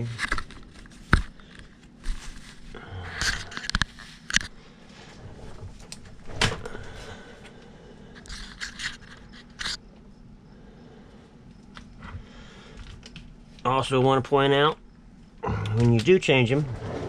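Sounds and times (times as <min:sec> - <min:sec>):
handling scrapes: 0:02.0 - 0:05.7, 0:16.5 - 0:17.0.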